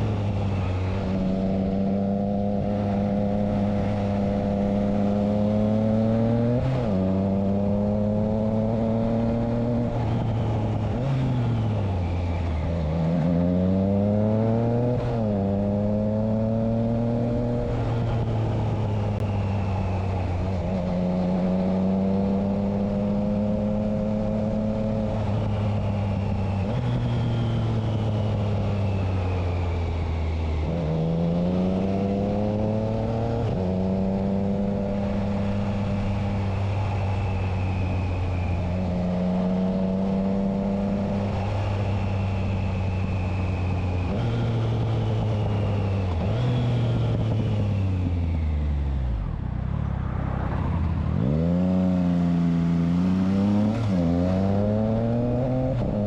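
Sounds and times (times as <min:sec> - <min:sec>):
motorcycle engine accelerating: 0:00.0 - 0:56.0.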